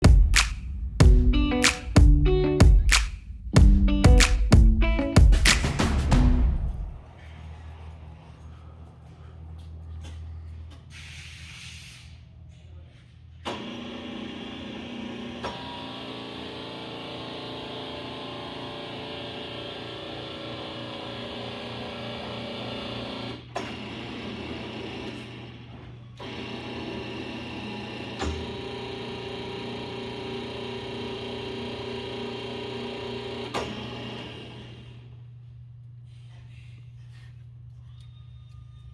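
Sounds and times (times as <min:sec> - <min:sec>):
drill press humming with gear whine: 0:13.5 - 0:35.2.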